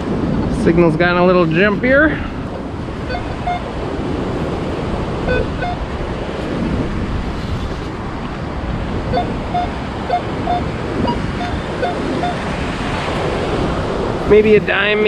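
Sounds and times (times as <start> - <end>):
surf: 0.0 - 15.0
wind on microphone: 0.0 - 15.0
metal detector beeps: 3.1 - 3.7, 5.2 - 5.9, 9.1 - 12.5.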